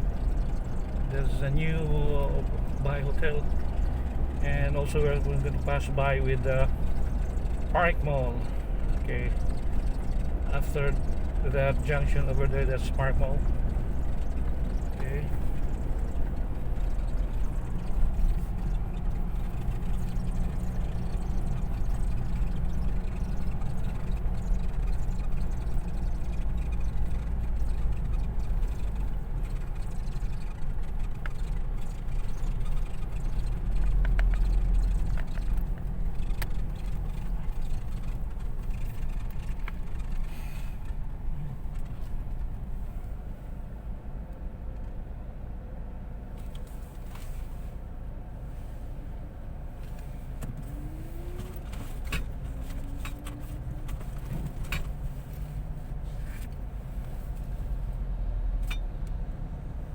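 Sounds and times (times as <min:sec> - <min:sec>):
truck engine and road rumble: 0:00.0 - 0:59.9.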